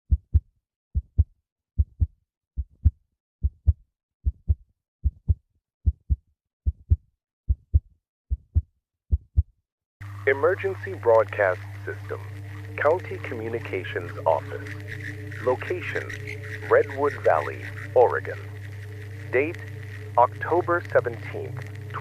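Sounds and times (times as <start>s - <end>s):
heartbeat thumps: 0.1s - 9.6s.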